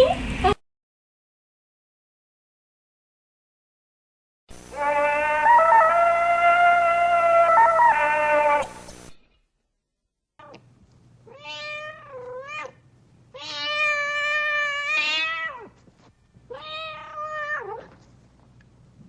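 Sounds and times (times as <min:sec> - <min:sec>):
cat meowing: 0:04.7 - 0:08.7, 0:11.3 - 0:15.8, 0:16.5 - 0:17.9.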